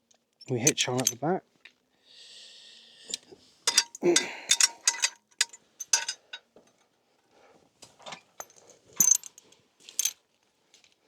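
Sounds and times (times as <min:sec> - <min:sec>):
metal chains jingling: 0:03.7 - 0:06.4, 0:09.0 - 0:09.4.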